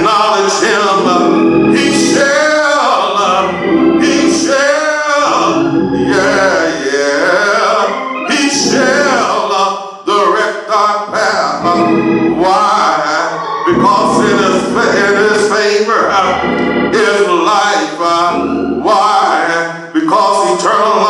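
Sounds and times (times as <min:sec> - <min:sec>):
man singing: 0:00.0 - 0:21.0
organ accompaniment: 0:00.0 - 0:21.0.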